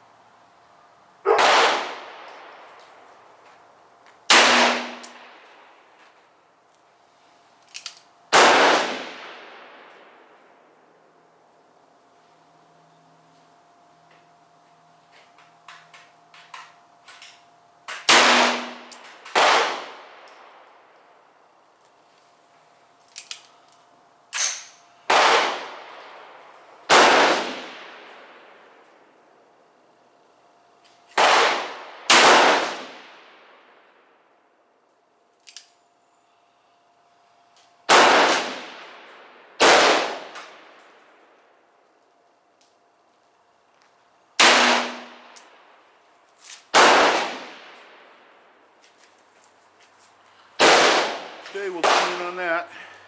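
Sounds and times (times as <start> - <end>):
revolver shots ringing out: 1.3 - 2.5
revolver shots with ringing echo: 1.3 - 2.6, 4.3 - 5.4, 8.3 - 9.8, 18.0 - 20.6, 24.4 - 28.4, 31.2 - 33.3, 37.9 - 40.7, 44.4 - 45.2, 46.7 - 47.9, 50.6 - 52.3.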